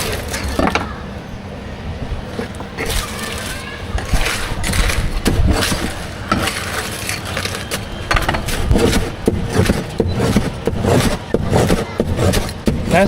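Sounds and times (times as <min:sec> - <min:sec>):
steady background noise: 0:00.0 - 0:13.0
sharp knocks and clatter: 0:08.1 - 0:13.0.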